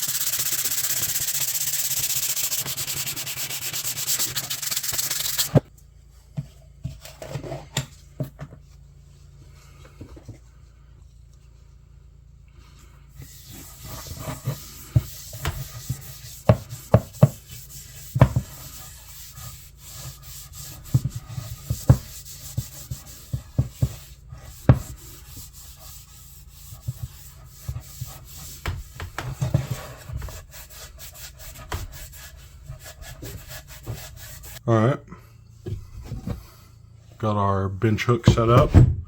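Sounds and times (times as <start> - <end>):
scratchy rubbing on wood: 0.0 - 5.6, 13.2 - 34.6.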